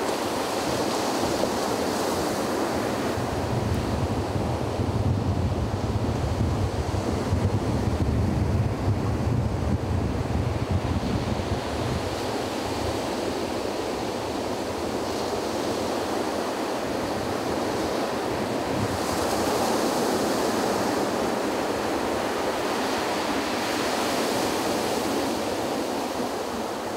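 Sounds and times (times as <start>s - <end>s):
sea waves breaking on beach: 0.0s - 7.8s, 10.5s - 26.9s
wind buffeting microphone: 0.0s - 15.2s.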